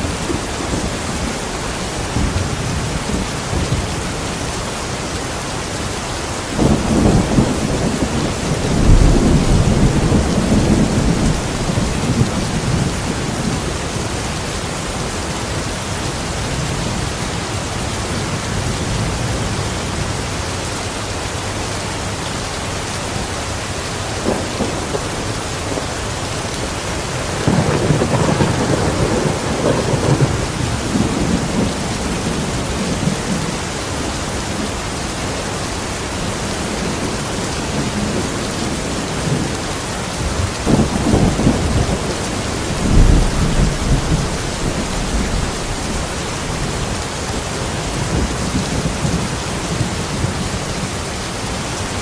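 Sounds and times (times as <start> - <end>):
steady rain: 0.0 - 52.0
thunder rumbling: 6.5 - 17.4, 24.1 - 35.0, 36.3 - 51.0.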